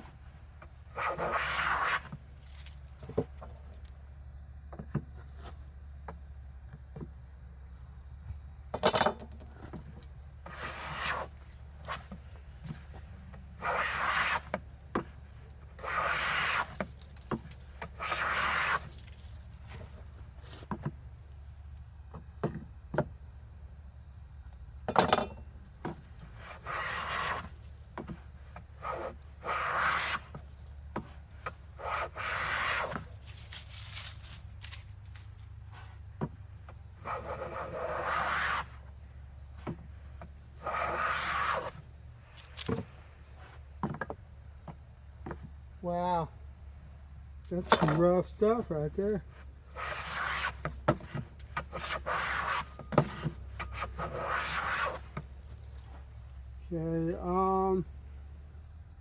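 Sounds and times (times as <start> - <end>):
hand plane shaving wood: 0.9 - 2.2, 10.5 - 11.3, 13.6 - 14.6, 15.8 - 19.2, 26.3 - 31.1, 31.7 - 33.6, 37.0 - 38.8, 40.6 - 41.8, 49.2 - 55.3.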